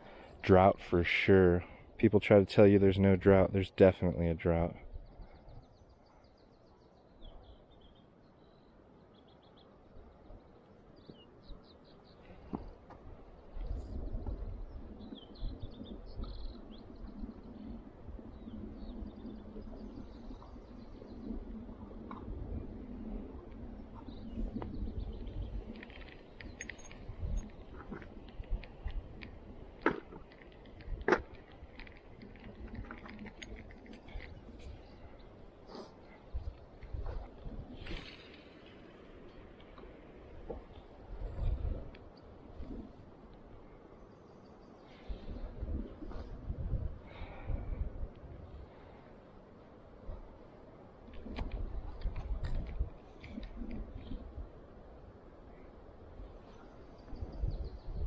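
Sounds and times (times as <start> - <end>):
faint birdsong chirps and trills: 0.0 - 51.0, 53.0 - 58.0
outdoor background noise: 0.0 - 58.0
light clicks and ticks: 25.7 - 34.8.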